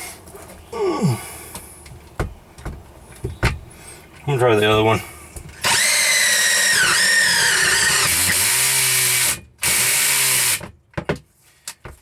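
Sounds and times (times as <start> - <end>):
cordless drill whining: 5.6 - 10.6.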